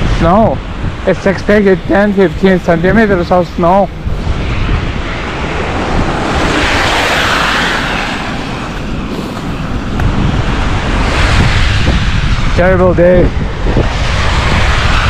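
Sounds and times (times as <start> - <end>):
wind buffeting microphone: 0.0 - 15.0
traffic hiss on wet road: 6.6 - 10.6.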